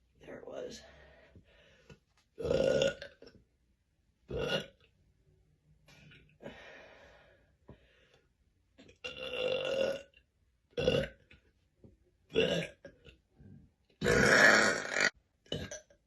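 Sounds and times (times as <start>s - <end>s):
woman burping: 2.4s - 3.1s, 14.0s - 16.0s.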